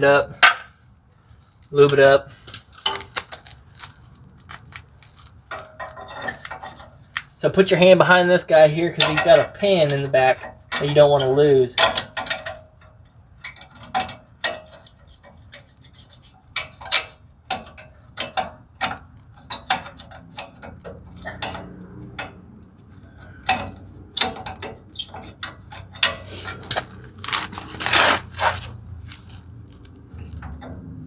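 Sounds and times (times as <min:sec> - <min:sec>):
metal scraping: 0:23.0 - 0:29.5.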